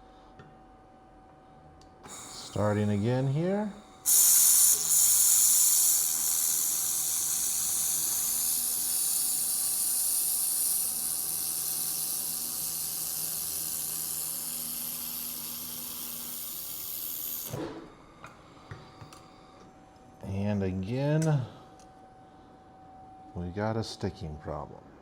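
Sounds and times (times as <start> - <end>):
faint steady whine: 0.1 - 25.0
laser welder hissing: 2.0 - 17.8.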